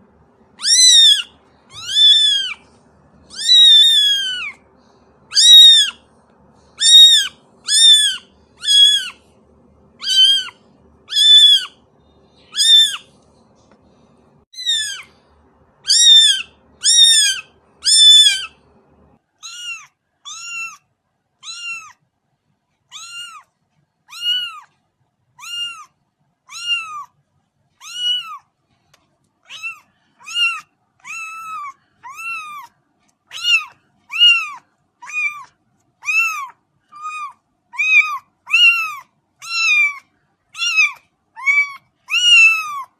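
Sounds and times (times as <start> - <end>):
kittens mewing: 0.6 - 4.7, 5.3 - 6.0, 6.7 - 9.2, 10.0 - 11.8, 12.5 - 13.1, 14.6 - 15.2, 15.9 - 18.6, 19.4 - 20.8, 21.4 - 22.0, 22.9 - 23.5, 24.1 - 24.7, 25.4 - 27.1, 27.8 - 28.5, 29.5 - 32.7, 33.3 - 40.0, 40.6 - 42.9.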